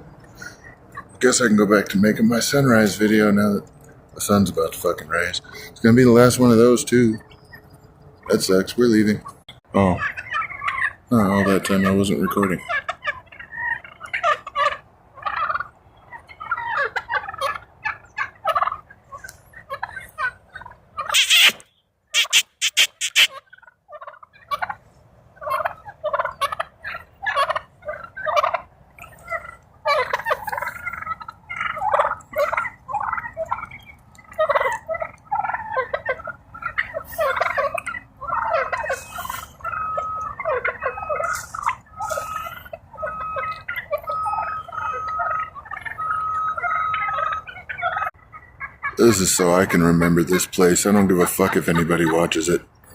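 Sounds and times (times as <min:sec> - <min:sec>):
turkeys gobbling: 0:00.0 - 0:52.9
sharp clicks: 0:21.2 - 0:23.3.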